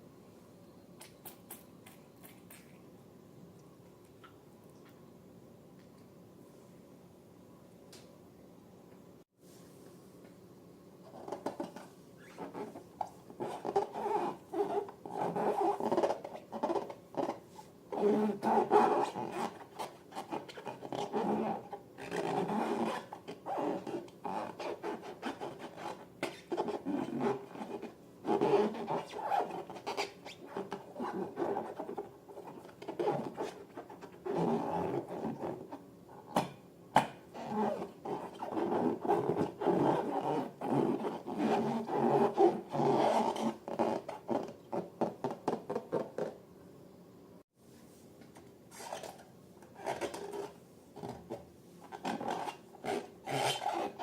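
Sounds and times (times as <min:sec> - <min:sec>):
balloons rubbing and squeaking: 0:11.1 - 0:35.8, 0:37.3 - 0:46.3, 0:49.8 - 0:54.0.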